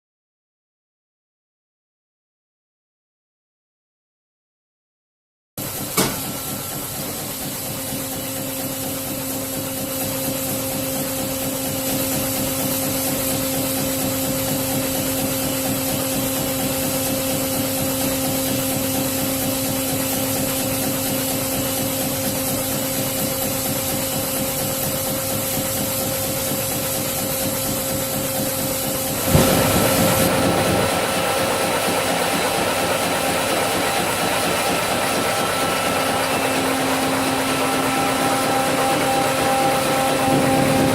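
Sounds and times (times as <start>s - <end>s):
hydraulic unit humming and whining: 5.6s - 40.9s
steady machine sound: 5.6s - 40.9s
sharp knock: 6.0s - 6.4s.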